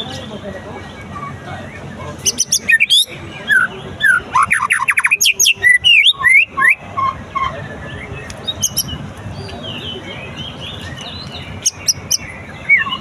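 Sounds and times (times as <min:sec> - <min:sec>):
bird singing whistles: 0:02.3 - 0:06.8, 0:10.8 - 0:13.0.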